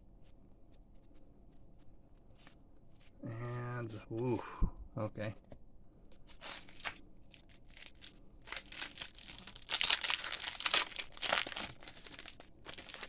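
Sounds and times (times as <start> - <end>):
wrapper crinkling and tearing: 6.4 - 13.0.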